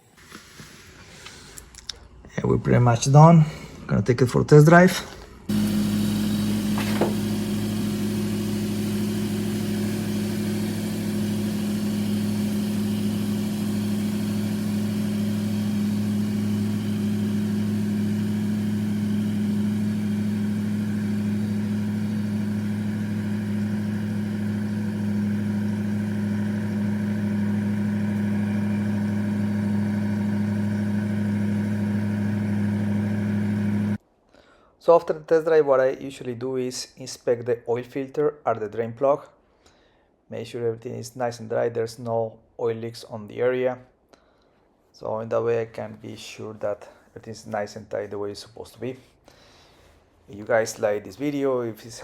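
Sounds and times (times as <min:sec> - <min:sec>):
car engine humming: 0:04.5 - 0:34.0.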